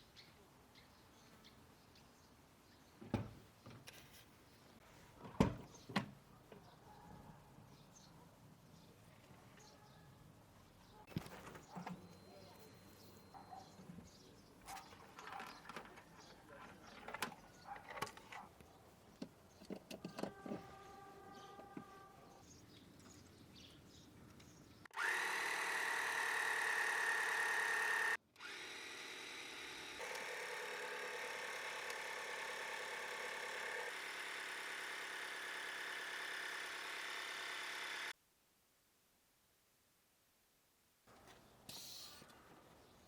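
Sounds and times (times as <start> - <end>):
small motor running: 24.9 - 38.2.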